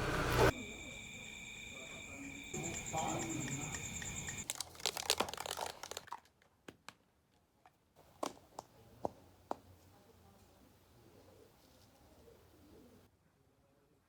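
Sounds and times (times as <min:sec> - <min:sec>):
crinkling and rustling: 0:04.4 - 0:06.4.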